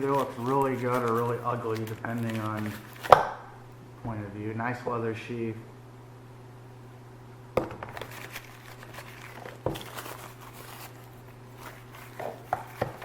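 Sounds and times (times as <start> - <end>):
crinkly leather rustling: 0.0 - 3.4, 7.9 - 13.0.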